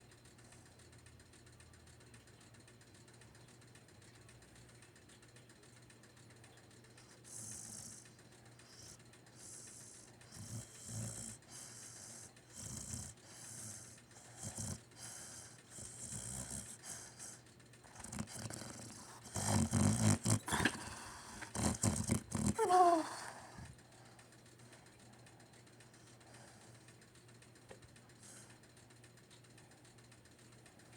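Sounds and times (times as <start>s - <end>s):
puppy snoring: 7.0s - 24.0s, 27.8s - 28.6s.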